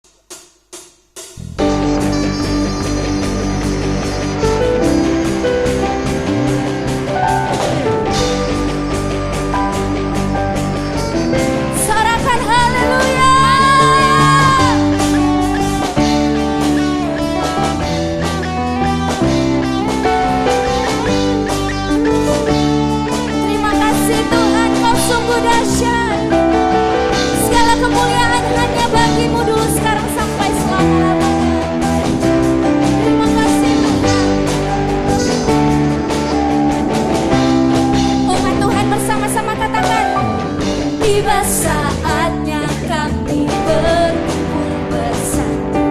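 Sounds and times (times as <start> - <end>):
rock music with guitar: 1.4 - 45.9
bending guitar lead melody: 1.5 - 45.9.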